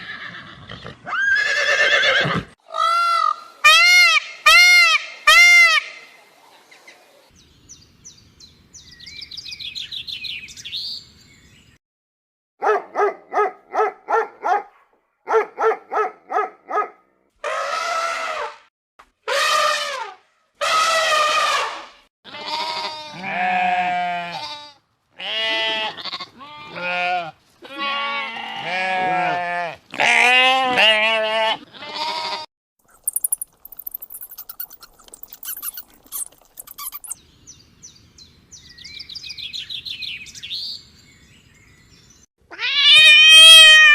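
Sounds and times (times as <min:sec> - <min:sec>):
goats bleating: 0:22.3 - 0:32.5
faint chirping: 0:32.9 - 0:38.0.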